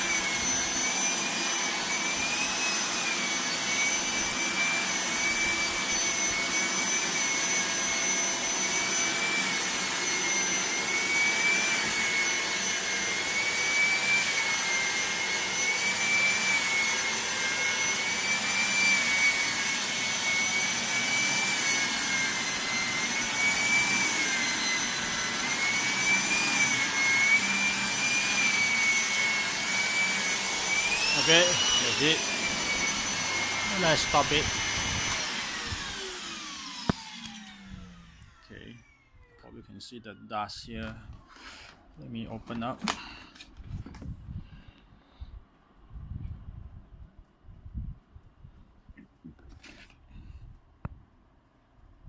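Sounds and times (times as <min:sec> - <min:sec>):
vacuum cleaner running: 0:00.0 - 0:39.6.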